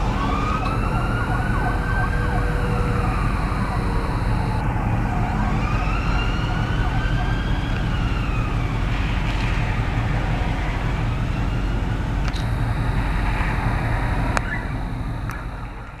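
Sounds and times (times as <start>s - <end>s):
road traffic rumble: 0.0s - 16.0s
sharp clicks: 12.2s - 16.0s.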